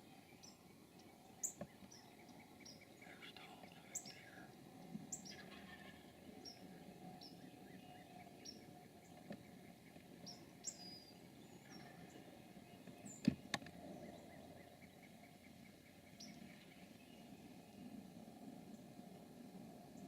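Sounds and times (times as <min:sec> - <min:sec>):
faint background hiss: 0:00.0 - 0:20.0
small birds chirping: 0:00.0 - 0:20.0.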